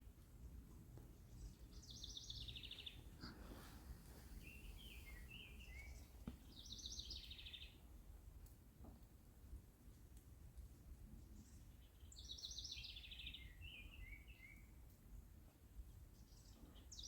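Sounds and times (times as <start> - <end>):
faint low outdoor rumble: 0.0 - 12.4
bird chirps: 4.4 - 7.7.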